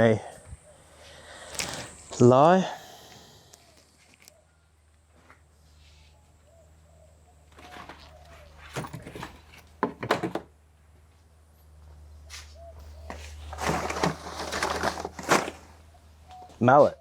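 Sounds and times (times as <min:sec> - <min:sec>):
rustle: 0:12.2 - 0:16.7.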